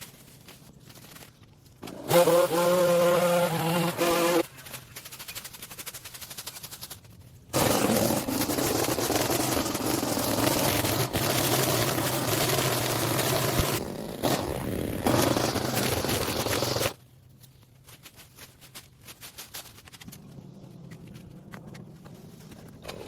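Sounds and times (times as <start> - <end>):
small gasoline engine running: 1.8 - 4.4, 7.6 - 17.0
quiet scraping and clicks: 17.3 - 23.0.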